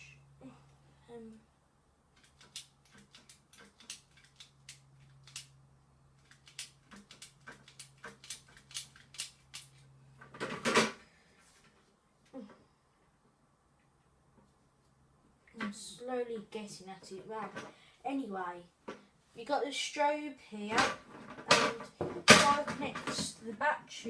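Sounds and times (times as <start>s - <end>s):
tool snipping cable insulation: 2.2s - 5.5s.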